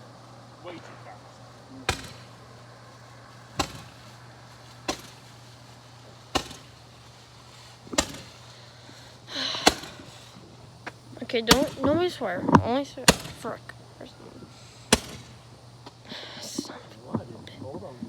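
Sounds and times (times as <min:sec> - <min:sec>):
firework bangs: 0:00.0 - 0:10.8, 0:11.4 - 0:13.6, 0:14.6 - 0:15.6
steady low hum: 0:00.0 - 0:18.0.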